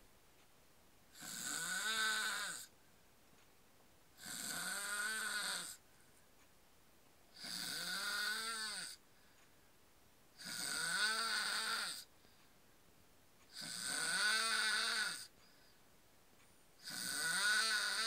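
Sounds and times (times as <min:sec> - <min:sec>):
man snoring: 0:01.1 - 0:02.7, 0:04.2 - 0:05.8, 0:07.3 - 0:09.0, 0:10.4 - 0:12.1, 0:13.5 - 0:15.3, 0:16.8 - 0:18.0.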